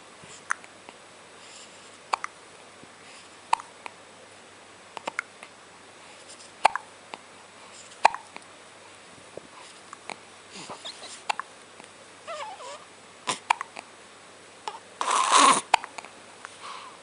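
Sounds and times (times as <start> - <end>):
hiccups: 2.1 - 2.3, 3.5 - 3.7, 6.6 - 6.9, 8.0 - 8.3, 10.7 - 11.5, 12.5 - 13.8, 14.7 - 16.0.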